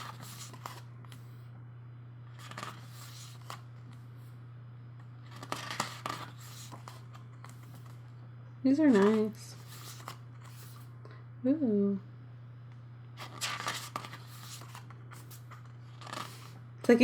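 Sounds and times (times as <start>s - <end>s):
paper pages rustling: 0.0s - 1.3s, 2.3s - 4.0s, 5.2s - 8.0s, 8.8s - 10.9s, 13.2s - 16.6s
steady low hum: 0.0s - 17.0s.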